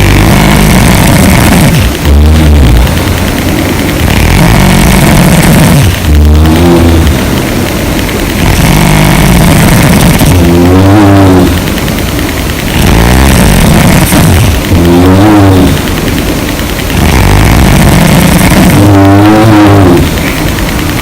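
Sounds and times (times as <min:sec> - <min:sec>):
woman snoring loudly: 0:00.0 - 0:03.0, 0:03.9 - 0:07.3, 0:08.3 - 0:11.7, 0:12.7 - 0:15.9, 0:16.9 - 0:20.2
noisy breathing: 0:00.0 - 0:21.0.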